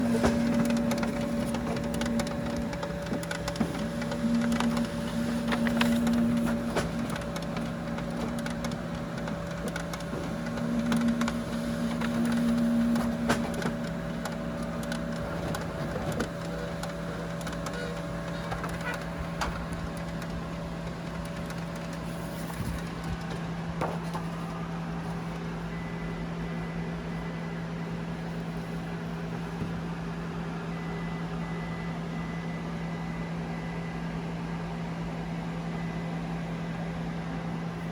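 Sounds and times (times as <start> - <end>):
printer machine hum: 0.0 - 34.4.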